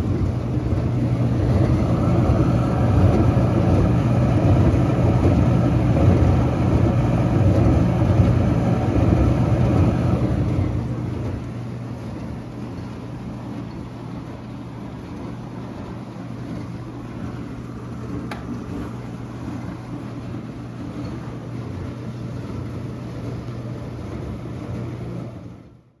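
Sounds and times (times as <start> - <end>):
dishwasher motor hum: 0.0 - 26.0
rushing water noise: 0.6 - 11.5.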